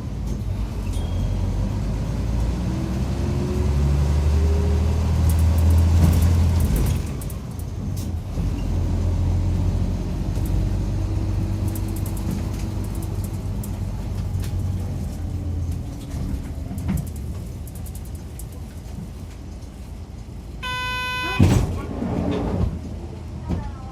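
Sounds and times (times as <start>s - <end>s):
bus engine drone: 0.0s - 23.9s.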